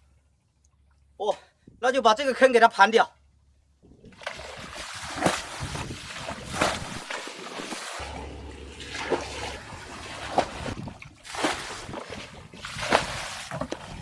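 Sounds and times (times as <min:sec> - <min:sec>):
trickling water: 0:03.8 - 0:14.0
water splashes: 0:04.0 - 0:14.0.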